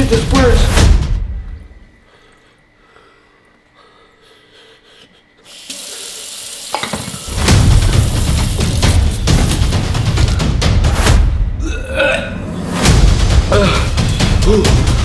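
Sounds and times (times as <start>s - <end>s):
water running from tap: 5.5s - 10.5s.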